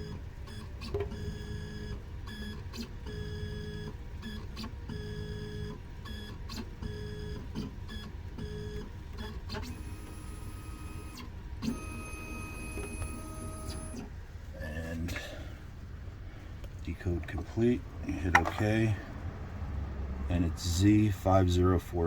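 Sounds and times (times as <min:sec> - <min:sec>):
key machine motors whining: 0:00.0 - 0:14.1.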